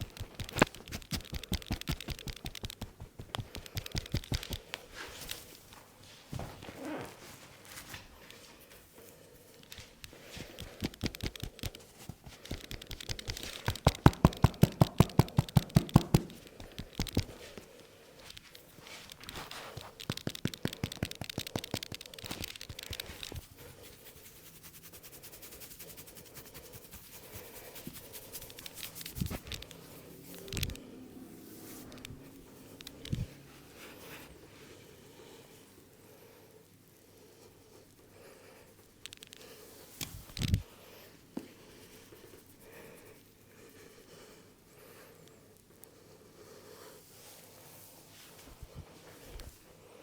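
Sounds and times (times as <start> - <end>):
rhythmic hand tapping: 0.0 - 4.8, 10.4 - 17.7, 19.8 - 29.7
rapid hand slaps: 0.0 - 4.9, 10.4 - 17.6, 19.8 - 29.6
hands rubbing hair and skin: 0.0 - 35.4, 38.7 - 44.4, 46.3 - 50.0.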